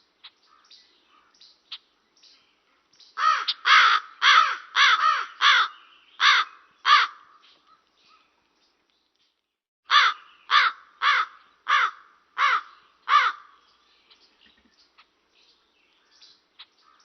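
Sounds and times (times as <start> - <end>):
raven cawing: 3.2 - 7.8, 9.9 - 13.6.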